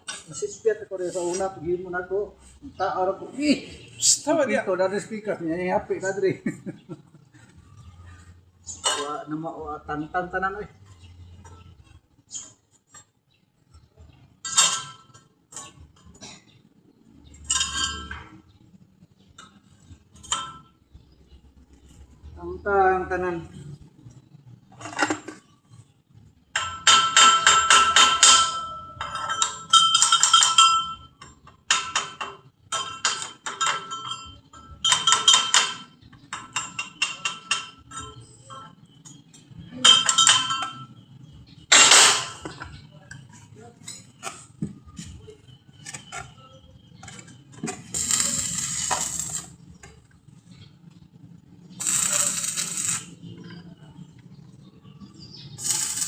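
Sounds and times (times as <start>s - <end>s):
hammer striking steel: 26.6s - 31.0s.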